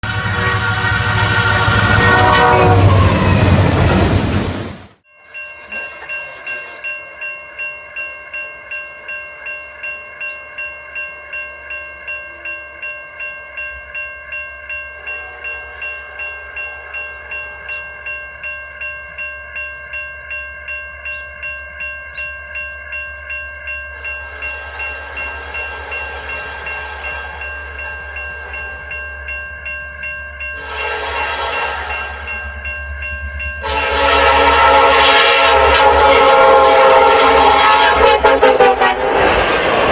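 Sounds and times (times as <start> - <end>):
locomotive horn: 0.0 - 4.2, 30.5 - 32.5, 33.6 - 39.9
railroad crossing bell ringing: 0.0 - 4.2, 5.0 - 39.9.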